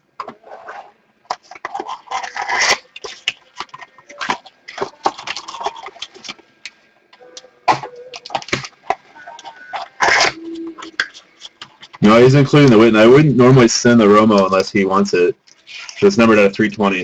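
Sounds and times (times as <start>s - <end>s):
packaging tearing and crinkling: 1.4s - 6.4s.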